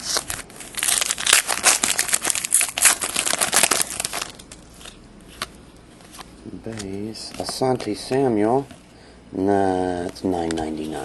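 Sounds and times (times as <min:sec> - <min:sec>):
card pack wrapper crinkling and tearing: 0:00.0 - 0:05.5.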